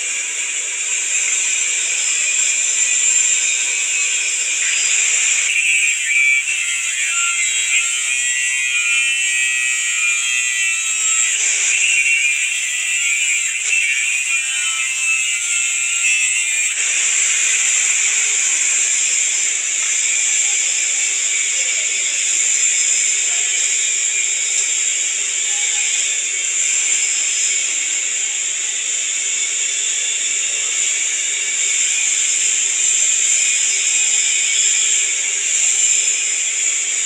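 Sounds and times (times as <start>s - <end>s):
electric welding arc hissing: 0.0s - 21.0s.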